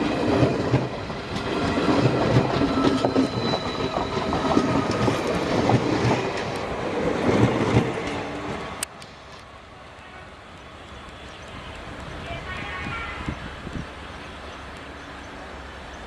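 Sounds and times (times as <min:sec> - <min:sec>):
train wheels clattering on rails: 0:00.0 - 0:08.9.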